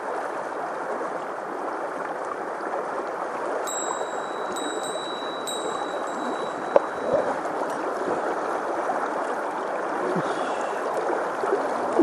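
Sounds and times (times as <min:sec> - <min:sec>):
stream water rushing: 0:00.0 - 0:12.0
thin high ringing tone: 0:03.7 - 0:08.1.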